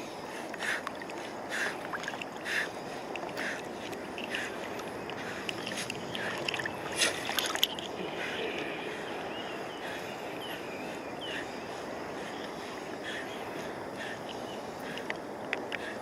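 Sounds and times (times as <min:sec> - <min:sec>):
river rushing: 0:05.7 - 0:14.0.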